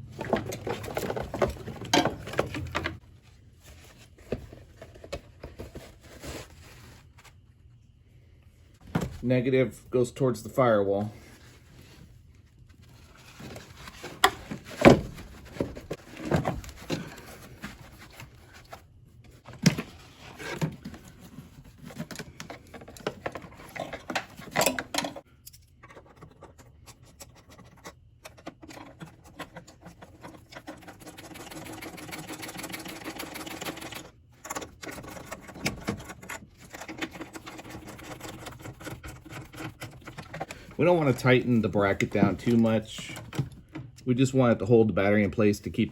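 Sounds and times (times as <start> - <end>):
car battery clunks and scrapes: 0.1 - 3.0, 13.7 - 17.9.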